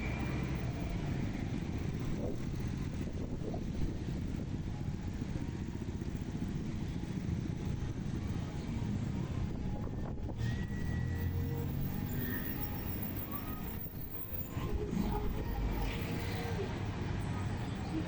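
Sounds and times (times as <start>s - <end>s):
traffic rumble: 0.0s - 18.0s
thin high tone: 10.7s - 16.7s.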